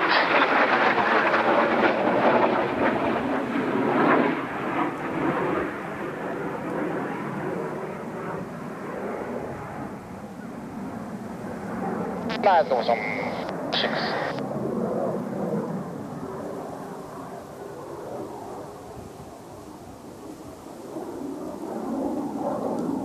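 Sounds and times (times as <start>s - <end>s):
jet aircraft rumbling: 0.0s - 23.0s.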